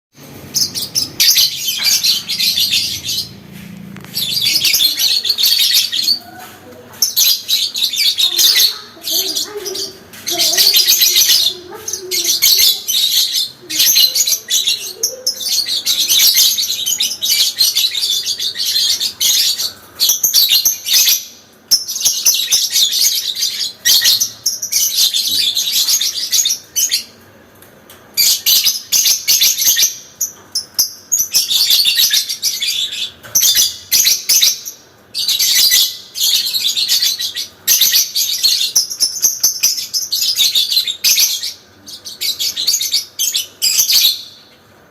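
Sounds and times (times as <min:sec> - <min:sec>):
lovebird shrill chattering: 0:04.2 - 0:21.2.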